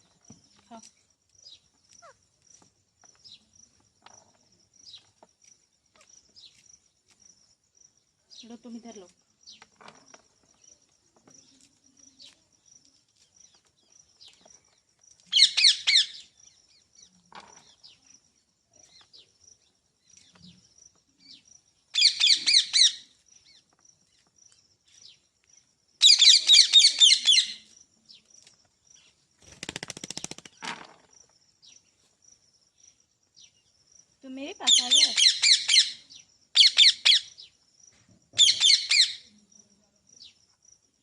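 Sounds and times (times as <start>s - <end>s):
parakeet calling shrilly: 15.3s - 16.2s, 22.0s - 23.0s, 26.0s - 27.6s, 34.6s - 37.4s, 38.4s - 39.3s.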